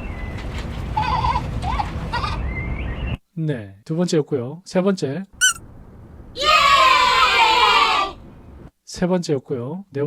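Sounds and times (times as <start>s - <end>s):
children screaming and cheering: 6.4s - 8.2s.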